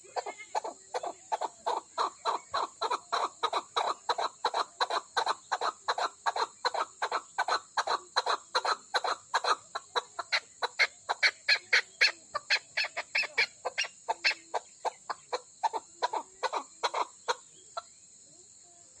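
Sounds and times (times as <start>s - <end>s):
partridge clucking call: 0.0s - 17.9s
crickets chirring: 0.0s - 19.0s.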